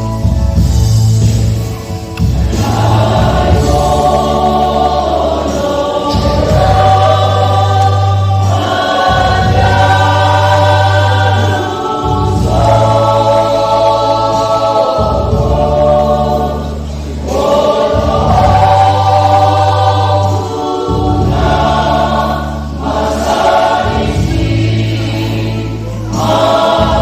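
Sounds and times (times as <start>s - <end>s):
choir singing a hymn: 0.0s - 27.0s
instrumental accompaniment: 0.0s - 27.0s.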